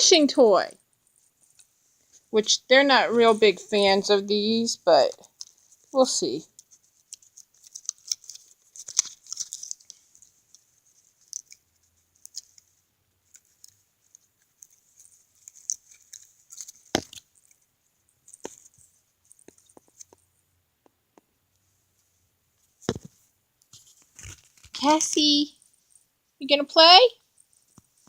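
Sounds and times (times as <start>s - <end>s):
plastic packaging crinkling: 5.1s - 17.6s, 18.2s - 20.2s, 23.8s - 24.9s
small ticks: 5.2s - 17.6s.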